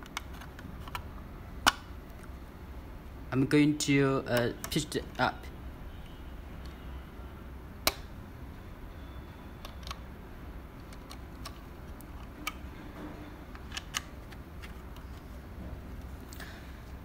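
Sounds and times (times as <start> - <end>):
plastic parts clicking: 0.0 - 2.3, 10.8 - 12.7, 13.5 - 15.3.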